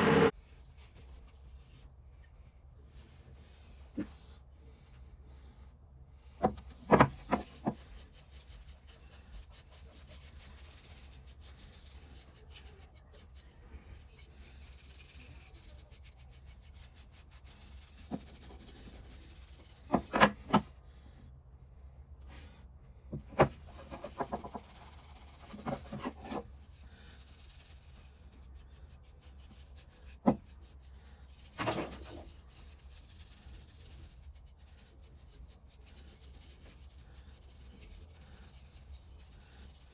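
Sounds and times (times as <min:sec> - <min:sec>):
hand tool scrapes and knocks: 0:23.1 - 0:26.5.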